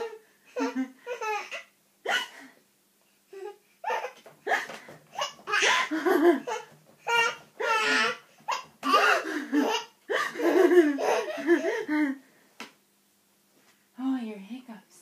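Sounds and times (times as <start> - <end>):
young child laughing: 8.8 - 12.2.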